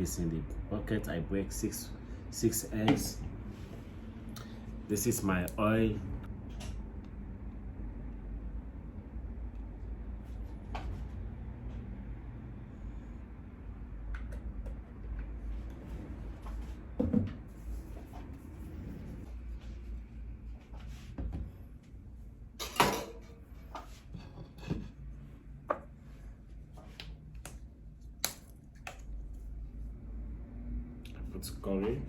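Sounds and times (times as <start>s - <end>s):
low steady hum: 0.0s - 32.0s
kitchen utensils clattering: 22.6s - 25.0s.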